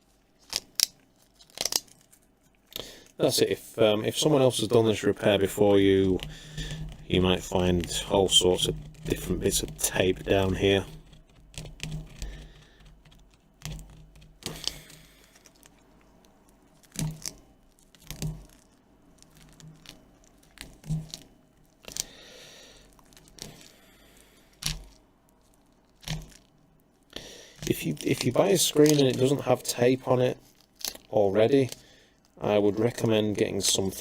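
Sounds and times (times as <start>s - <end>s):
adhesive tape ripping off plastic: 0.4s - 2.8s, 16.7s - 22.2s.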